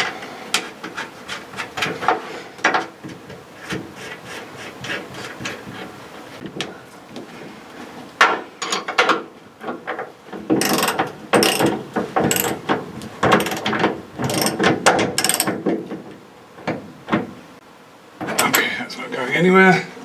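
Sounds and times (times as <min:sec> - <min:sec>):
ratchet wrench clicking: 0:10.6 - 0:11.7, 0:12.3 - 0:12.5, 0:14.2 - 0:14.6, 0:15.2 - 0:15.5.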